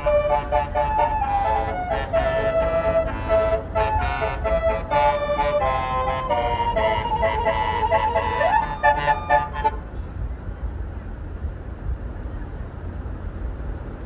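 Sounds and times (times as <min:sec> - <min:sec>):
multi-note bus horn tune: 0:00.0 - 0:10.0.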